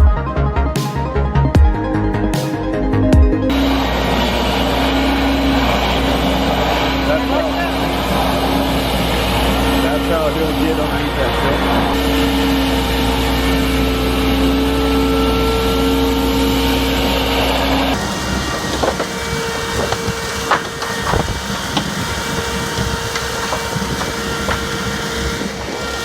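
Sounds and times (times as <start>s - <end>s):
vacuum suction machine running: 3.5s - 26.0s
knocks and clatters: 18.0s - 25.4s.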